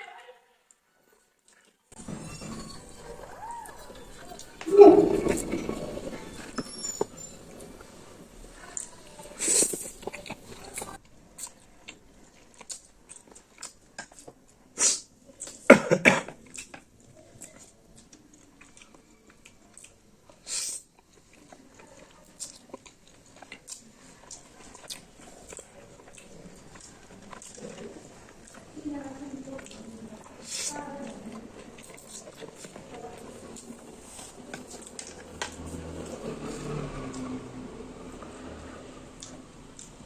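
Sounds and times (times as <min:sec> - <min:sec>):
chewing and biting: 0:01.5 - 0:15.6, 0:16.4 - 0:28.8, 0:29.4 - 0:37.4, 0:39.2 - 0:40.0
breathy bursts: 0:02.0 - 0:11.0
lip smacks: 0:02.6 - 0:11.6.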